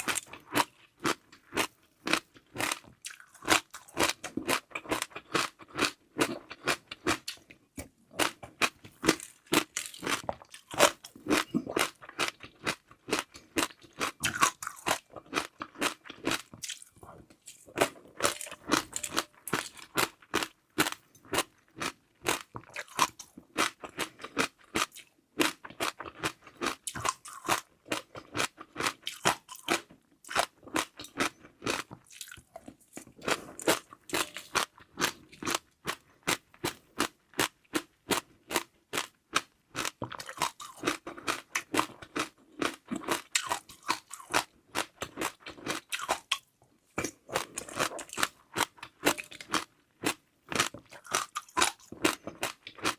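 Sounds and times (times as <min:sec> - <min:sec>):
person chewing crunchy food: 0:00.0 - 0:52.9.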